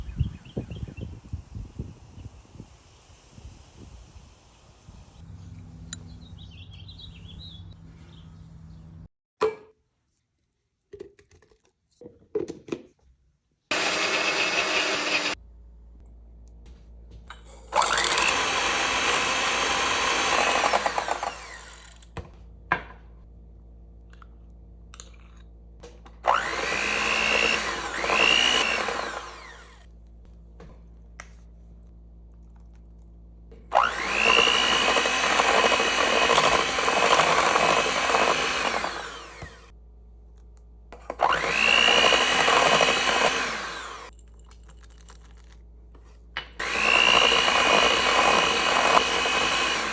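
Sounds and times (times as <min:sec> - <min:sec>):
electric blender whining: 0:13.7 - 0:15.4, 0:17.4 - 0:22.2, 0:26.2 - 0:29.9, 0:33.6 - 0:39.7, 0:41.0 - 0:44.1, 0:46.6 - 0:49.9.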